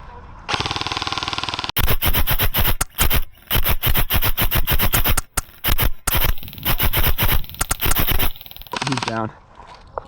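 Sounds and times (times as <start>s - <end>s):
airsoft gun firing full auto: 0.6s - 9.0s.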